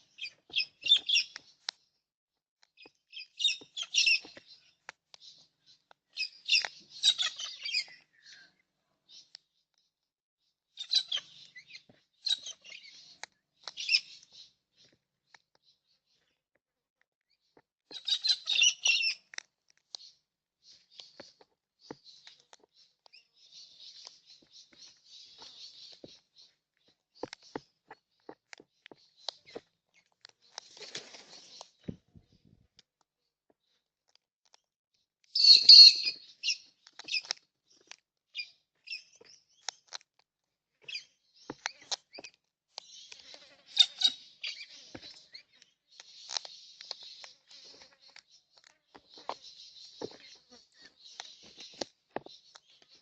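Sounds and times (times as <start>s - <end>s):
birds chattering and chirping: 0.0s - 2.0s, 2.6s - 34.7s, 35.3s - 53.0s
high bird calls: 2.8s - 9.3s, 35.4s - 37.4s.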